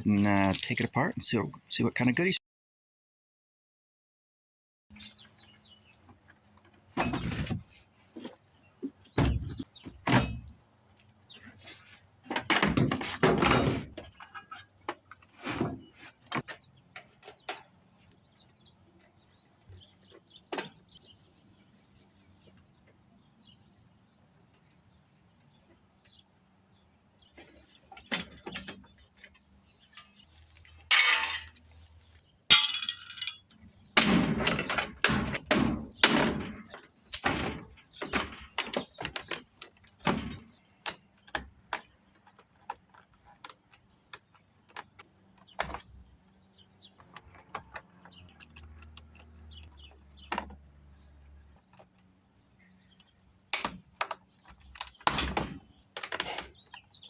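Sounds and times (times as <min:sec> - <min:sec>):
metal clanking and rattling: 0:30.8 - 0:31.6, 0:32.5 - 0:39.2.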